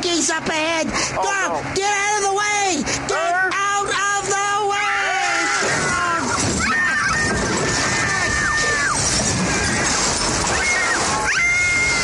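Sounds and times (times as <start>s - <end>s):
high-pitched screams: 4.6s - 12.0s
crash with shattering and splintering: 5.3s - 12.0s.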